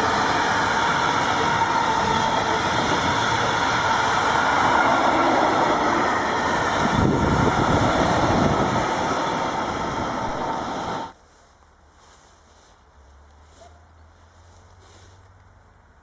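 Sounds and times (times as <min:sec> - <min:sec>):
train wheels rolling on rails: 0:00.0 - 0:11.2.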